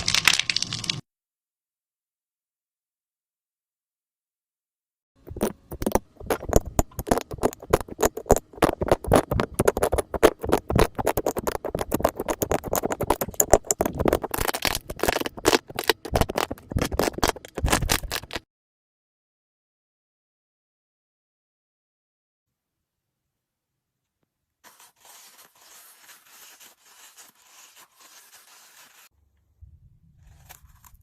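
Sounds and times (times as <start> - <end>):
slime squeezed by hand: 5.3 - 18.4.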